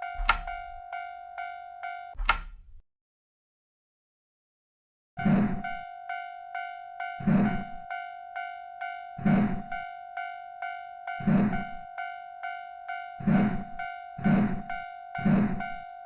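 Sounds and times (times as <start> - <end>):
railroad crossing bell ringing: 0.0 - 2.2, 5.6 - 16.0.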